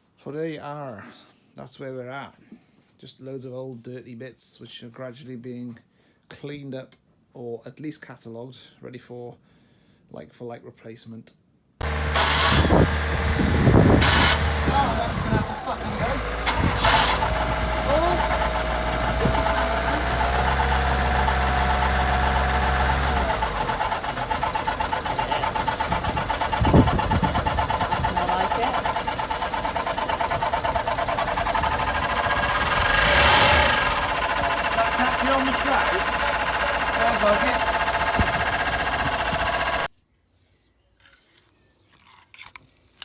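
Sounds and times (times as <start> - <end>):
motor humming and whining: 11.8 - 39.9.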